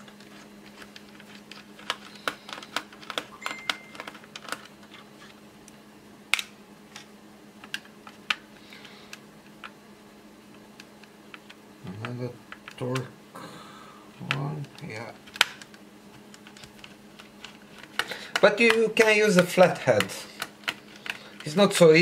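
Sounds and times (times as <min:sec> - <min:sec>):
faint steady hum: 0:00.0 - 0:22.0
screwdriver clicking on plastic: 0:00.1 - 0:04.7, 0:16.3 - 0:21.5.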